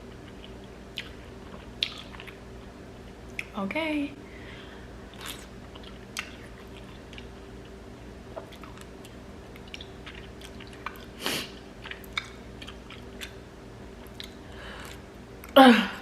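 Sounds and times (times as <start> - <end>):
person chewing food: 0.0 - 3.5, 5.0 - 15.6.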